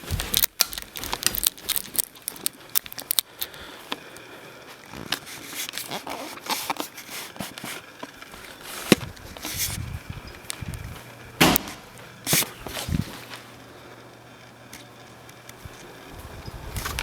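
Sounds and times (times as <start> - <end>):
faint low hum: 7.0 - 17.0.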